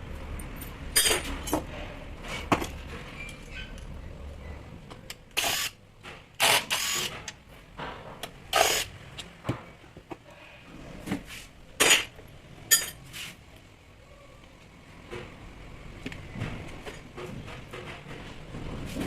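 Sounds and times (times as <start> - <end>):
scraping and rattling of tool parts: 0.6 - 4.0, 10.9 - 13.4
metal parts clicking and knocking: 0.9 - 1.7.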